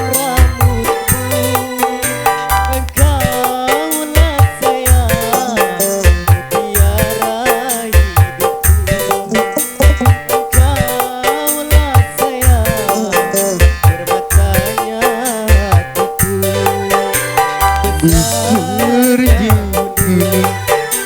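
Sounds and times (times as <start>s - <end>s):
driving drum rhythm: 0.0s - 21.0s
keyboard melody with vibrato: 0.0s - 21.0s
deep bass thumps: 3.0s - 3.4s, 17.9s - 20.6s.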